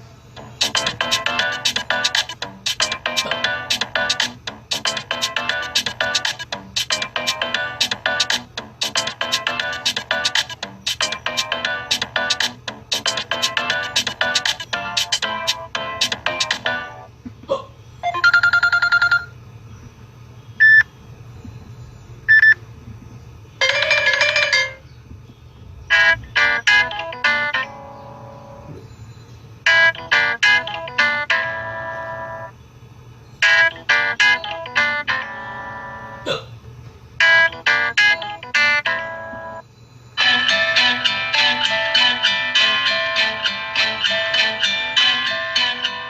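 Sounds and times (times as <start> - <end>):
phone ringtone: 0.4 - 17.1, 18.0 - 19.4, 23.6 - 24.8, 25.9 - 28.8, 29.7 - 32.5, 33.4 - 36.3, 37.2 - 39.6, 40.2 - 46.0
phone ringtones: 18.0 - 19.4, 23.6 - 24.8, 25.9 - 28.7, 29.7 - 32.5, 33.4 - 36.2, 37.2 - 39.6.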